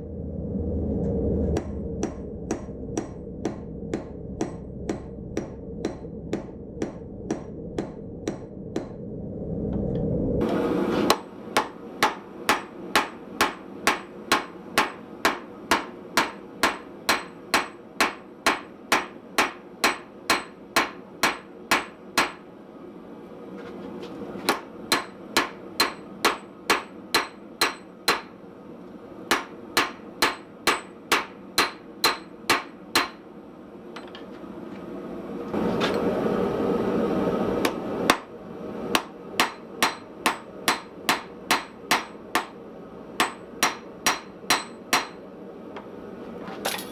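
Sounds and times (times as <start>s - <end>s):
hammer striking steel on anvil: 1.6s - 9.0s, 11.0s - 22.5s, 24.4s - 28.4s, 29.3s - 33.3s, 37.6s - 38.3s, 39.0s - 42.6s, 43.2s - 45.2s, 46.7s - 46.9s.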